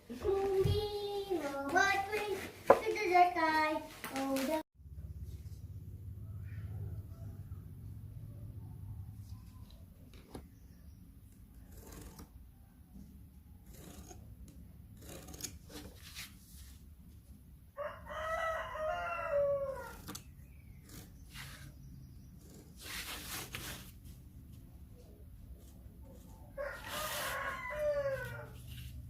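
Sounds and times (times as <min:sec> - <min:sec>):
rustling and scraping: 0:00.1 - 0:04.6, 0:15.0 - 0:17.3, 0:22.4 - 0:29.0
rooster crowing: 0:06.2 - 0:08.7, 0:17.8 - 0:20.0, 0:26.5 - 0:28.6.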